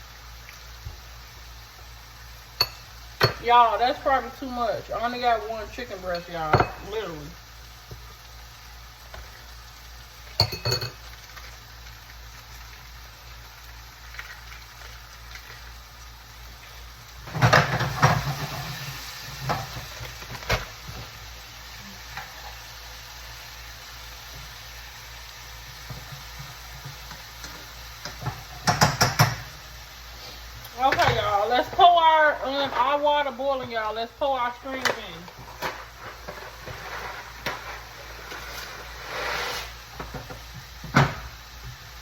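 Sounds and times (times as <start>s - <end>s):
steady low hiss: 0.0s - 11.3s
utensil clinking against a bowl: 2.6s - 3.5s, 6.0s - 7.1s, 10.3s - 11.0s.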